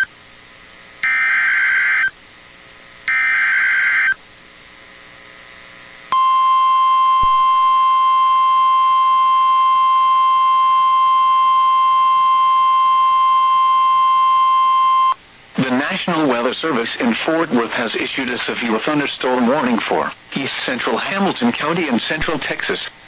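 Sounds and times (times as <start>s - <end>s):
steady warning alarm tone: 1.0s - 2.1s, 3.1s - 4.2s, 6.1s - 15.2s.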